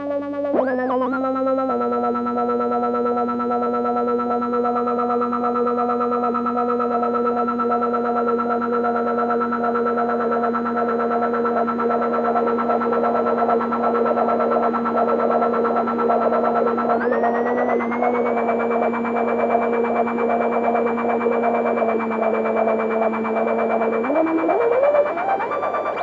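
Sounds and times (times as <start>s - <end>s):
layered electronic drone: 0.0s - 26.0s
fluttering electronic layer: 7.8s - 26.0s.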